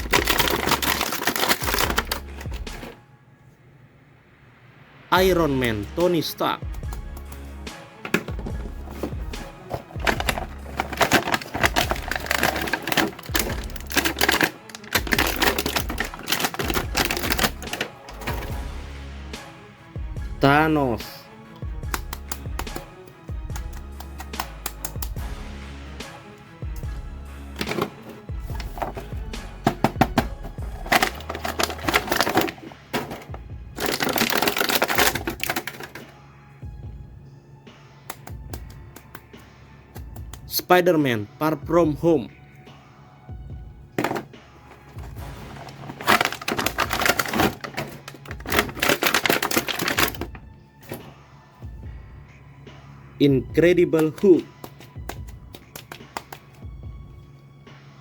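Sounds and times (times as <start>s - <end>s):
plastic clicks and rattles: 0.0s - 3.0s, 8.0s - 18.5s, 27.6s - 29.0s, 29.6s - 36.1s, 44.0s - 51.0s, 54.0s - 56.6s
plastic packaging crinkling: 0.0s - 3.0s, 8.1s - 18.6s, 27.6s - 36.1s, 44.0s - 51.1s, 53.9s - 56.6s.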